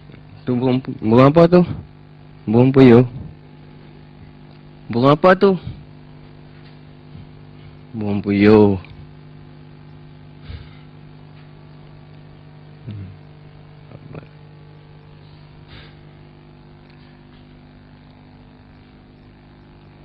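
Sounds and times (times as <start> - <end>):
low mechanical hum: 0.0 - 20.0.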